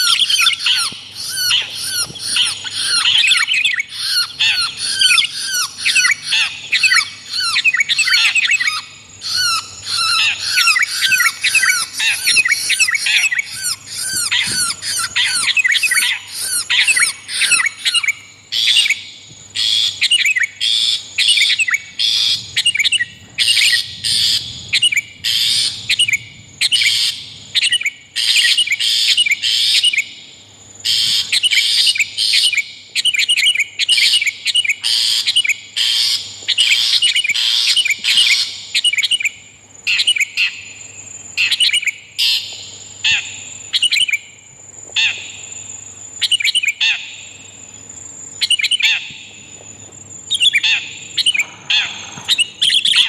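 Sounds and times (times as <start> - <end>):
harsh bird calls: 0.0 - 30.2, 45.0 - 53.0.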